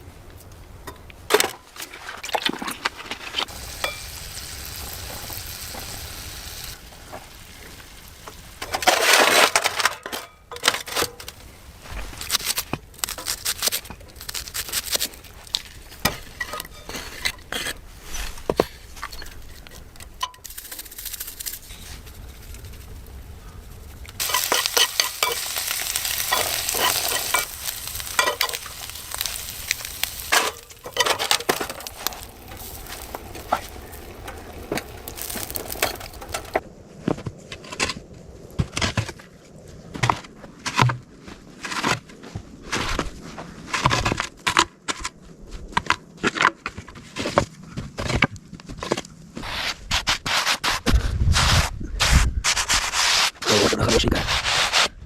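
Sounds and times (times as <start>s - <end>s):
food sizzling in a pan: 3.5s - 8.6s, 24.2s - 36.6s
stirring scraping and clicking: 24.2s - 36.6s.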